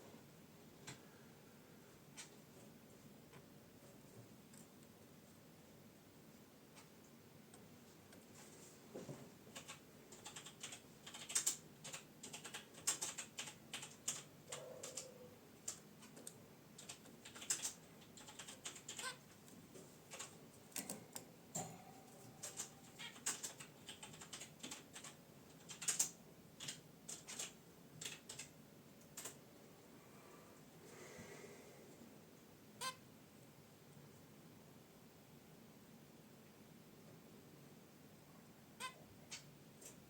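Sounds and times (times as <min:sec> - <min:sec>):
soft finch calls: 0:17.3 - 0:19.2, 0:22.4 - 0:24.3, 0:32.8 - 0:33.0, 0:38.8 - 0:39.5.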